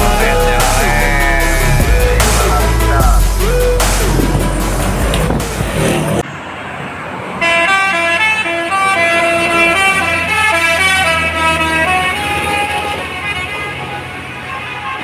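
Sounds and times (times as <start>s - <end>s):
bus engine hum: 0.0s - 15.0s
bus multi-tone horn melody: 7.4s - 15.0s.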